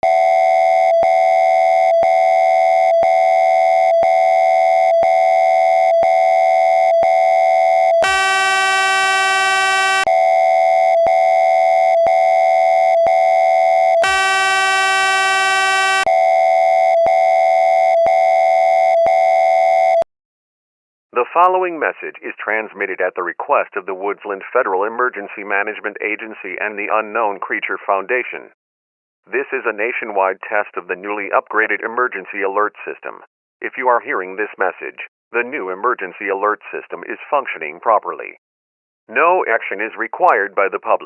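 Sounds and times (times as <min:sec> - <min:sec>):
emergency alert tone: 0:00.1 - 0:20.0
harsh buzzy tone: 0:08.0 - 0:10.1, 0:14.0 - 0:16.1.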